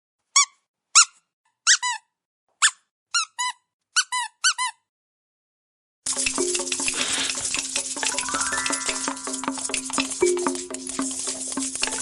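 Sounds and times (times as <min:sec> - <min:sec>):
squeaky rubber dog toy: 0:00.3 - 0:04.9.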